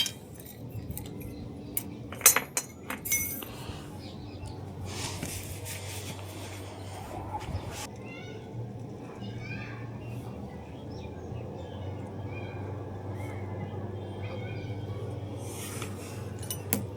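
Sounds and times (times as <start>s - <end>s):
metal parts clinking: 0.0s - 3.6s, 15.8s - 16.9s.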